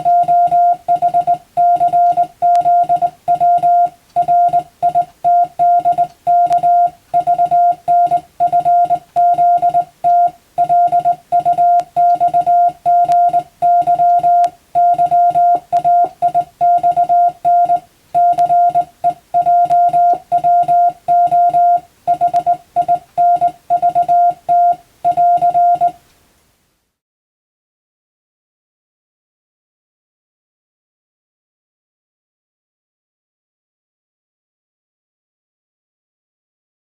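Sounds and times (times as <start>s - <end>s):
morse code tone: 0.0s - 26.0s.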